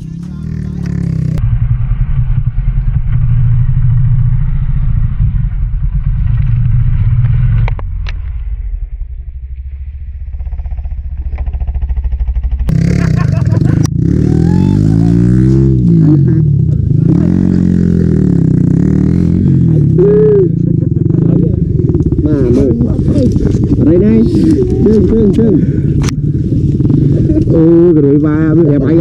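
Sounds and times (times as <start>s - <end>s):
motorcycle engine revving: 0.0s - 9.0s, 9.8s - 29.0s.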